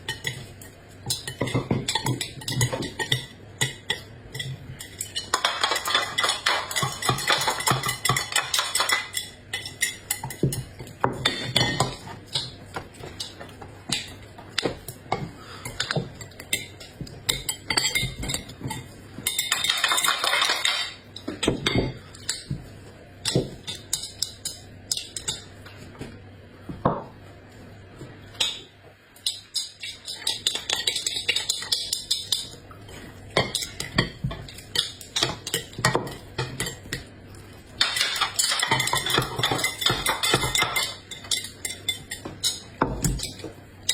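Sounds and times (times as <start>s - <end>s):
utensils clinking on dishes: 0.0s - 25.7s, 28.3s - 43.9s
utensil scraping or stirring: 29.2s - 43.9s.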